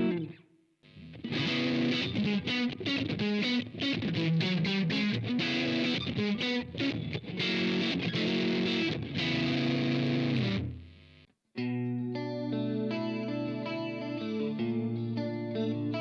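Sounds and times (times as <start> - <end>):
distorted electric guitar: 0.0 - 16.0.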